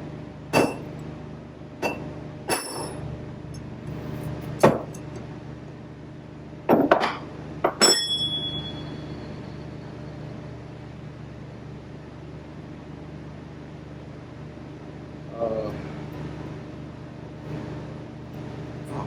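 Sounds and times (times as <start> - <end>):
hammer striking metal: 0.6 - 0.9, 1.8 - 3.0, 7.7 - 9.1.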